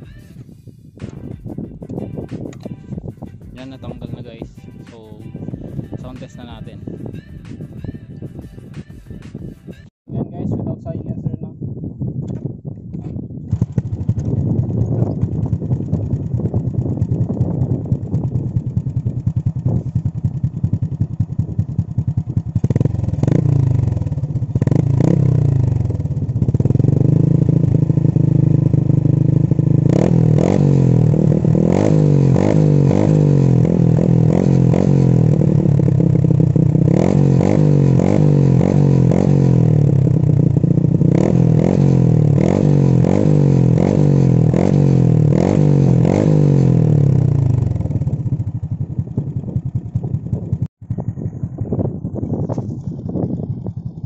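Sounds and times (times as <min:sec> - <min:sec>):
motorcycle engine revving: 0:13.1 - 0:54.0.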